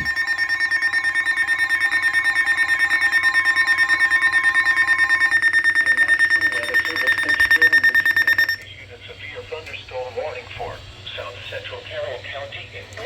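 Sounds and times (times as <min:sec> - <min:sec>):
lower steady alert tone: 0:00.0 - 0:08.6
rapidly pulsing beep: 0:00.0 - 0:08.6
steady high alert tone: 0:00.0 - 0:08.6
warbling alert tone: 0:00.0 - 0:08.6.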